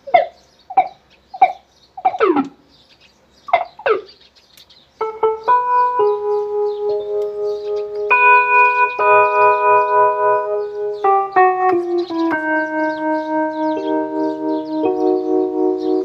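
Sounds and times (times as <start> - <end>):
synthesizer sustained chords: 5.0 - 16.0.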